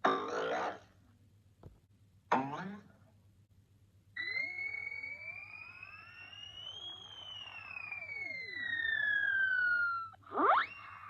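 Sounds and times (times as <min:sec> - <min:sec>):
synthesized whistling tone: 0:04.2 - 0:11.0.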